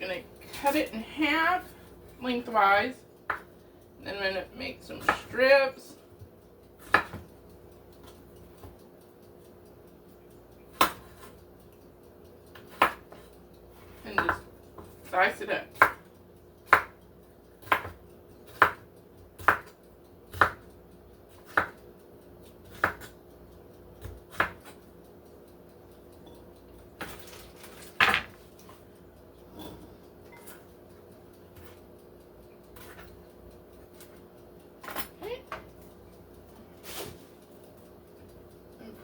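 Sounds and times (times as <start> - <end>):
knife chopping on cutting board: 6.8 - 7.2, 12.6 - 13.1, 16.7 - 16.9, 17.6 - 18.8, 19.4 - 19.7, 20.3 - 20.6, 21.4 - 21.8, 22.7 - 23.1.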